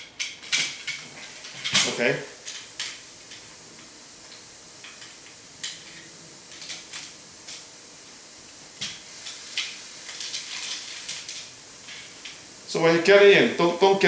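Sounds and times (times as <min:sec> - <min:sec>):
curtain track parts clicking: 0:08.8 - 0:12.4.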